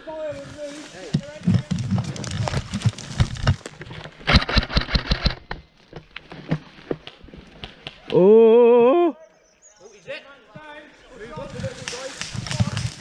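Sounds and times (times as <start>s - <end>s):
sharp cracks and snaps: 1.0s - 6.3s, 6.9s - 8.2s, 11.4s - 13.0s.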